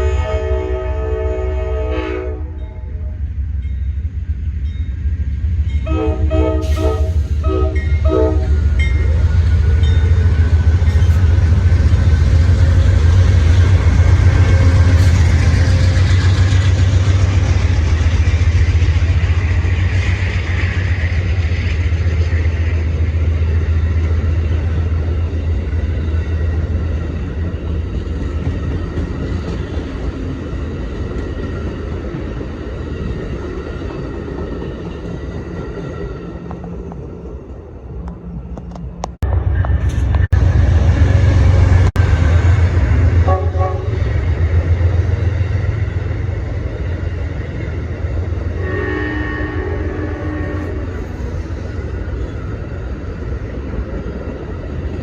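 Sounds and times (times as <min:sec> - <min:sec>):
train horn blasts: 0:00.0 - 0:03.2, 0:05.8 - 0:09.2, 0:43.2 - 0:44.1, 0:48.6 - 0:51.1
train passing with low rumble: 0:00.0 - 0:55.0.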